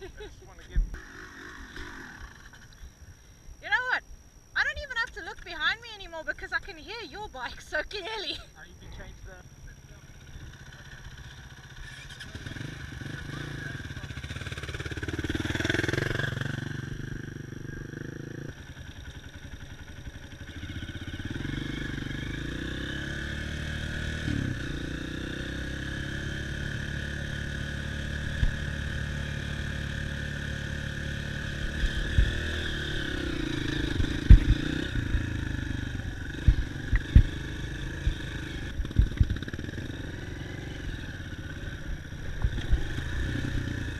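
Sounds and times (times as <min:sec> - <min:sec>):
dirt bike engine running: 0:00.0 - 0:02.9, 0:04.6 - 0:43.9.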